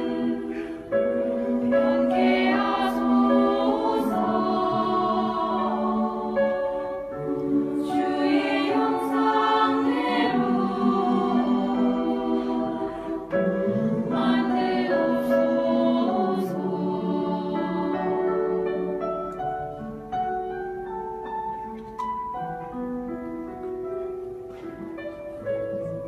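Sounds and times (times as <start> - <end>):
church choir singing a hymn: 0.0 - 19.1.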